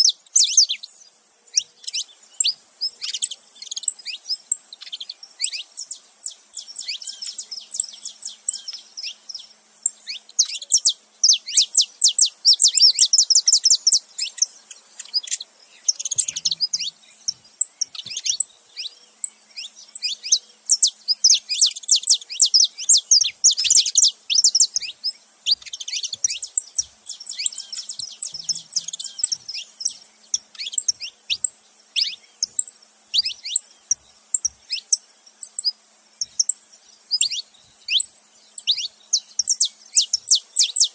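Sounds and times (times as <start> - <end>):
finches chirping: 0.0 - 40.9.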